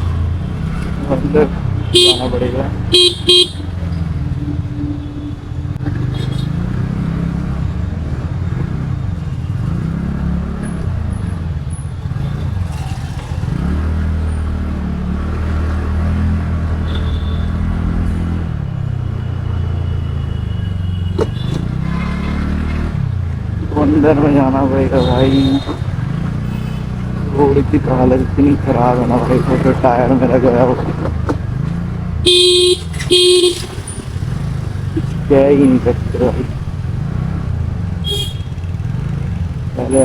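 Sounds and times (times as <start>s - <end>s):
scooter engine running: 2.0s - 3.8s, 12.0s - 13.8s, 32.3s - 35.2s.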